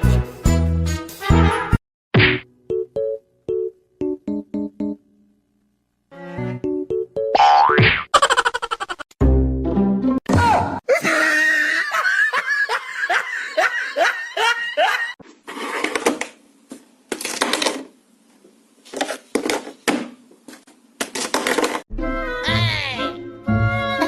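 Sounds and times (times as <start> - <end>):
person laughing: 8.1 - 9.1, 10.9 - 15.2.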